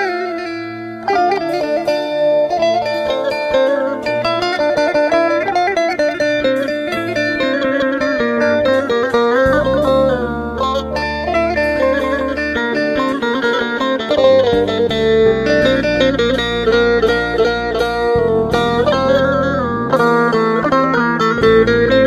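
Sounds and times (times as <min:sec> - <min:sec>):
plucked string instrument melody: 0:00.0 - 0:22.0
held low tones: 0:02.5 - 0:22.0
deep sliding bass note: 0:08.4 - 0:13.4, 0:14.3 - 0:22.0.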